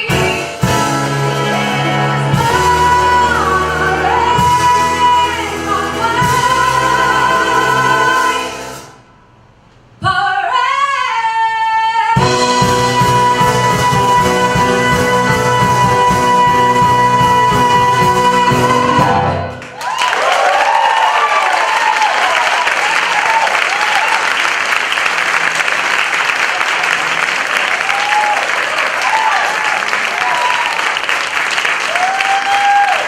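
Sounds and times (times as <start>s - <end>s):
live band playing: 0.0s - 9.2s, 12.2s - 19.8s
woman singing show tune: 1.2s - 8.7s, 10.0s - 19.2s
audience applause: 19.6s - 33.0s.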